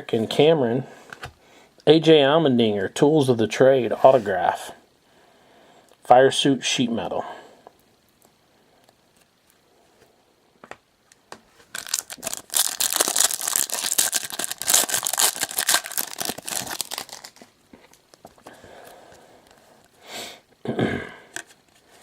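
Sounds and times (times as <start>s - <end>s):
card wrapper tearing and crinkling: 11.6s - 18.5s.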